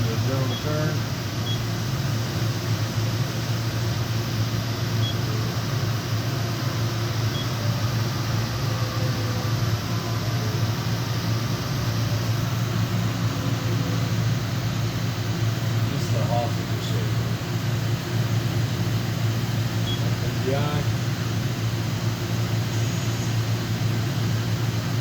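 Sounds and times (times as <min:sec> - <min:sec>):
machine hum and fan whirr: 0:00.0 - 0:25.0
faint high beeps: 0:07.3 - 0:07.6, 0:19.8 - 0:20.1.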